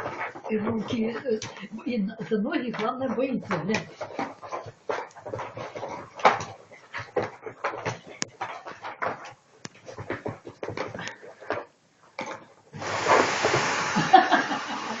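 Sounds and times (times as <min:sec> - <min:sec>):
dog tussling with vacuum cleaner: 0:00.0 - 0:11.6, 0:12.7 - 0:15.0
vacuum cleaner motor rushing: 0:12.8 - 0:15.0.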